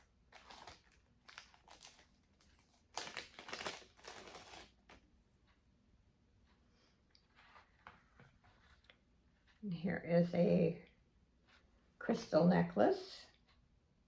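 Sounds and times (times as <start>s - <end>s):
jewelry packaging rustling: 0.0s - 5.0s.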